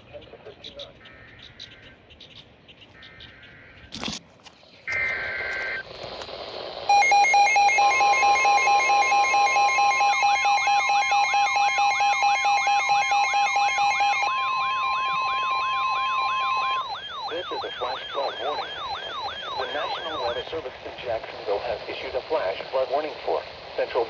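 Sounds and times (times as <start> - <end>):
pulsing beeps: 4.9 - 5.9, 6.8 - 22.2
steady alarm tone: 6.8 - 20.9
high two-pitch tone: 6.9 - 20.4
siren-like wail: 6.9 - 20.5.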